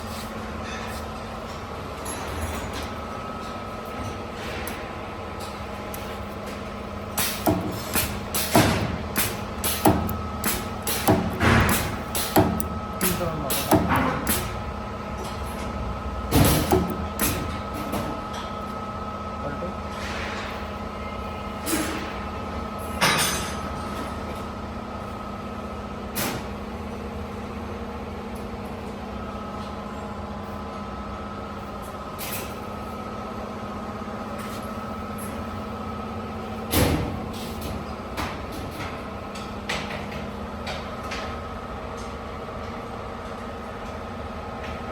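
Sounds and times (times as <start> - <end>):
welding machine electrical hum: 0.0 - 44.9
welding machine clunks and bursts: 7.1 - 18.2.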